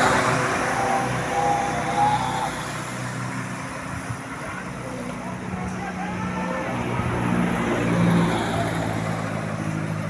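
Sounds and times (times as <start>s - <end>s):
faint wavering tones: 0.0s - 3.1s
bus engine passing: 0.0s - 10.0s.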